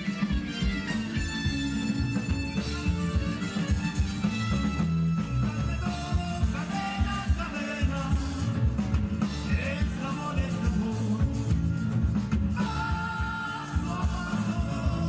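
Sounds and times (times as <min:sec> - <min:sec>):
sustained guitar notes: 0:00.0 - 0:10.0
drums: 0:00.0 - 0:15.0
live rock band: 0:00.0 - 0:15.0.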